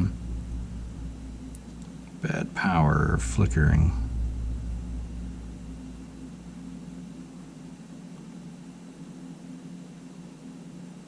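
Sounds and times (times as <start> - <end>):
machine humming with hiss: 0.0 - 11.0.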